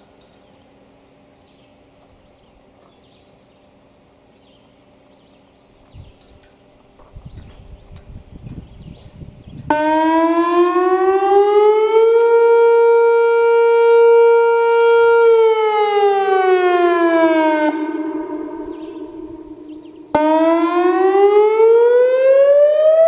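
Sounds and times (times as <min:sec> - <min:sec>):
electronic storm siren: 0:09.3 - 0:23.0.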